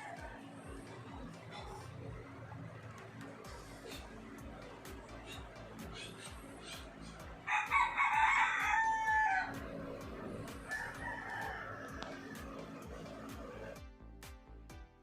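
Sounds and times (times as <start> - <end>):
rooster crowing: 0.0 - 1.8, 6.2 - 13.8
background music with steady beat: 0.0 - 15.0.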